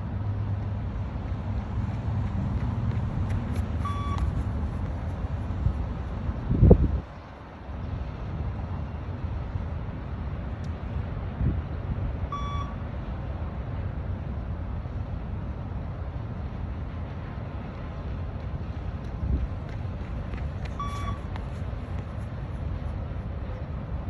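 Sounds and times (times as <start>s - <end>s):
low rumbling background noise: 0.0s - 24.0s
short electronic beep: 3.8s - 4.3s, 12.3s - 12.8s, 20.8s - 21.3s.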